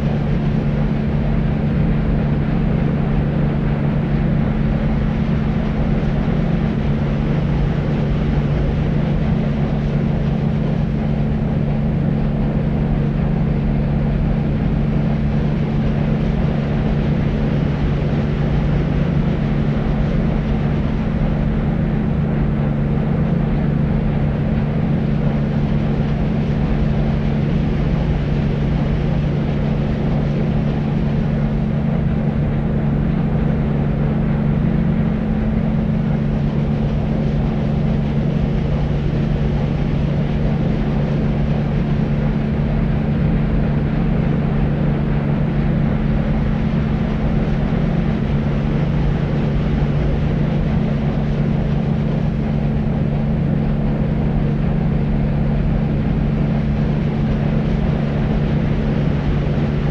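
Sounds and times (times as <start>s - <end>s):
deep white noise: 0.0s - 59.9s.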